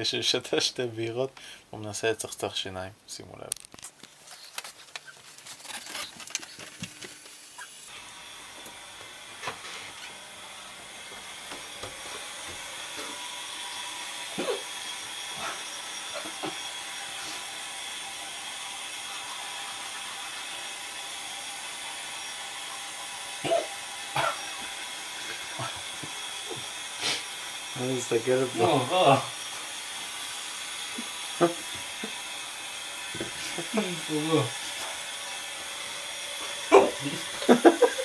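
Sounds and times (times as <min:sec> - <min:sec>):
man hiccuping: 0:14.4 - 0:14.6, 0:23.4 - 0:24.4, 0:36.7 - 0:37.1
steady hiss: 0:25.0 - 0:32.1, 0:33.1 - 0:38.0.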